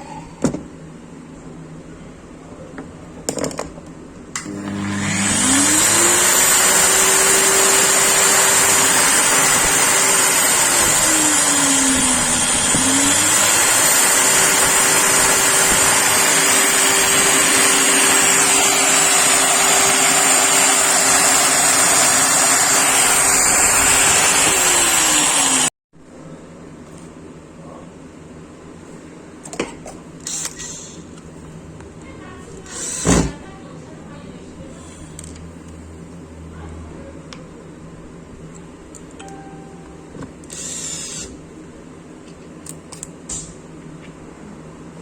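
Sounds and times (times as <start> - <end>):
angle grinder motor whine: 4.4 - 25.7.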